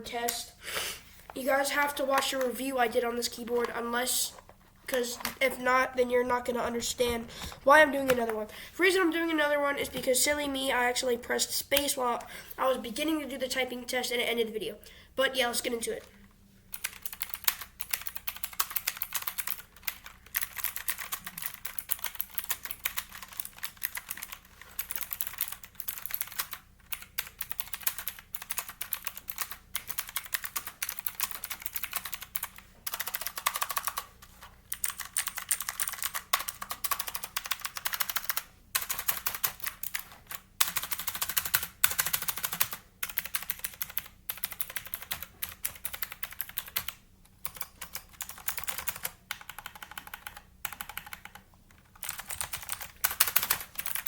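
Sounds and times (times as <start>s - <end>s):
mechanical keyboard typing: 16.7s - 34.1s, 34.7s - 54.0s.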